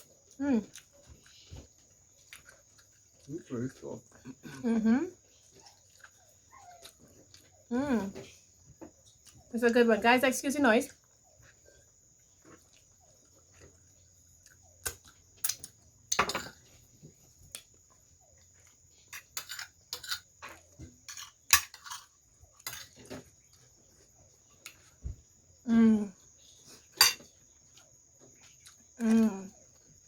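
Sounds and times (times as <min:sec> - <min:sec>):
chewing: 0:00.0 - 0:09.5, 0:10.9 - 0:16.0, 0:16.6 - 0:25.0, 0:26.2 - 0:30.0
cutlery scraping a plate: 0:19.1 - 0:23.1, 0:27.0 - 0:27.3.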